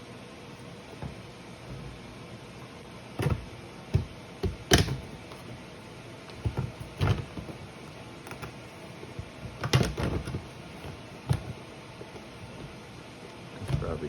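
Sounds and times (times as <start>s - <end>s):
parts knocking and clunking: 0.8s - 2.2s, 3.1s - 14.0s.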